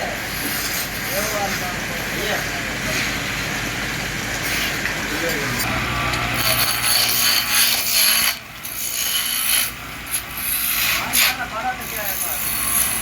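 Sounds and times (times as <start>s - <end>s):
lathe tool scraping spinning wood: 0.0s - 13.0s.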